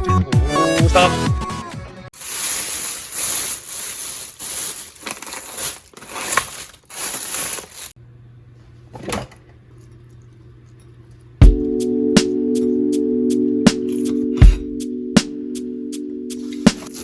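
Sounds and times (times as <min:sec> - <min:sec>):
rustling crinkling noise: 0:02.2 - 0:08.0.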